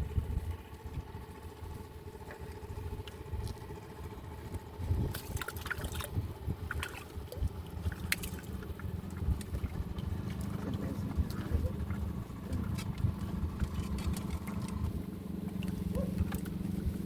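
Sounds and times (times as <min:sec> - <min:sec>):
engine droning: 0:00.0 - 0:17.0.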